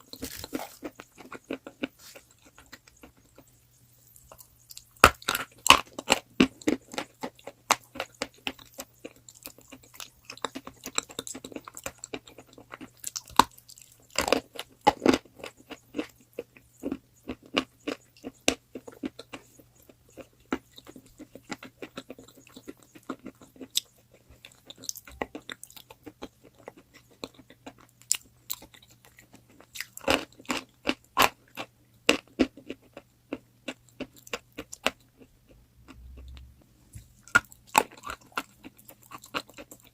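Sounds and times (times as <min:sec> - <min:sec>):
chalk being chewed: 0:00.0 - 0:04.8
faint low hum: 0:00.0 - 0:39.9.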